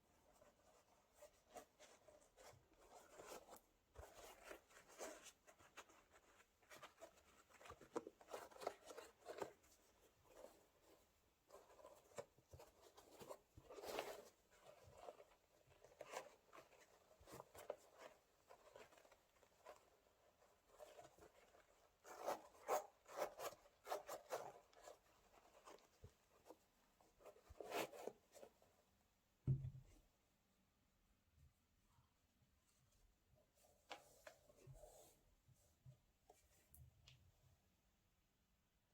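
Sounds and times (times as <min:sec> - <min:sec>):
dull thump: 0:29.5 - 0:29.8.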